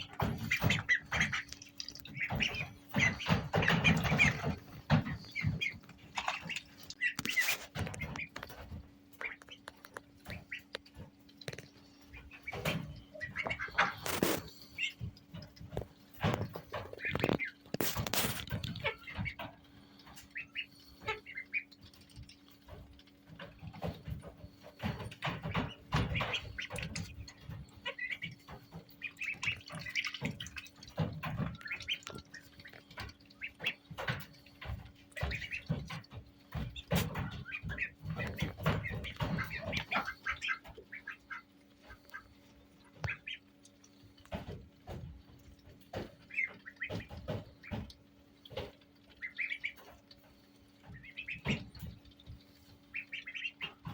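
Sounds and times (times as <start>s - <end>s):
knocks and bumps: 0.0s - 19.6s, 22.6s - 40.9s
ducklings peeping: 0.0s - 53.9s.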